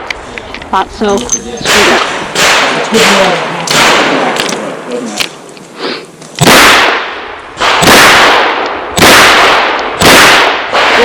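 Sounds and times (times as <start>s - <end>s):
handgun shots: 1.6s - 4.6s, 6.4s - 11.0s.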